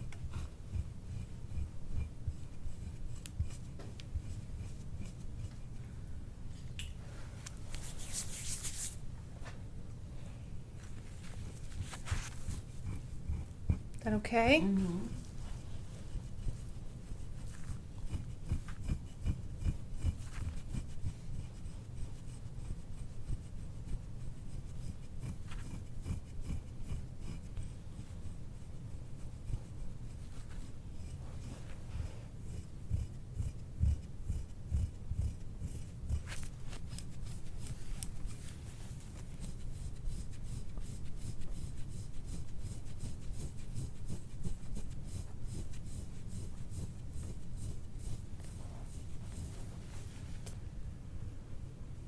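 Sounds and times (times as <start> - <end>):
hands rubbing on skin: 7.5 - 9.0, 10.8 - 13.8, 34.4 - 50.6.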